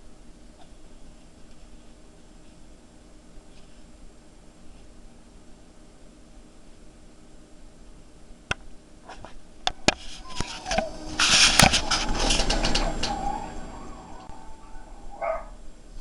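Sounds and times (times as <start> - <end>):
loud scratchy rustle: 9.1 - 13.9
dog whining: 9.8 - 15.6.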